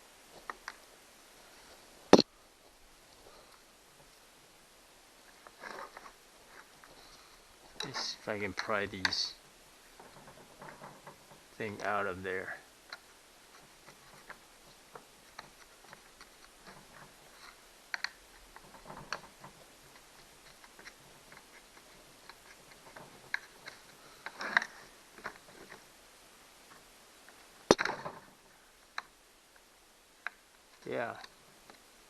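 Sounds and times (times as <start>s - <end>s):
part snapping open: 27.7s - 28.0s.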